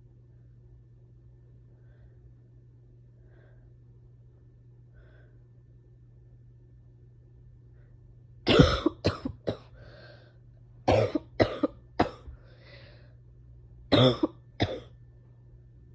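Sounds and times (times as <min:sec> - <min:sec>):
person breathing: 0:01.7 - 0:02.4, 0:03.1 - 0:03.8, 0:04.9 - 0:05.5, 0:09.7 - 0:10.4, 0:12.3 - 0:13.2
person coughing: 0:08.5 - 0:09.7, 0:10.9 - 0:12.3, 0:13.9 - 0:14.9.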